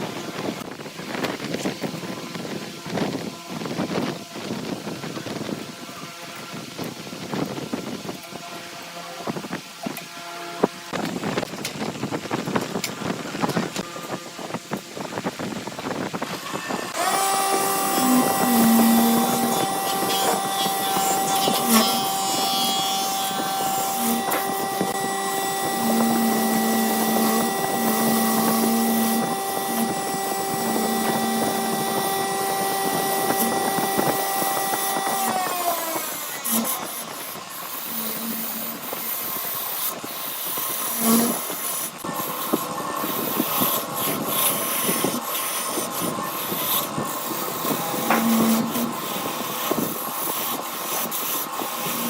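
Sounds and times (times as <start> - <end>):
wood lathe motor whining: 0.0 - 52.0
rubbing and scraping: 13.0 - 52.0.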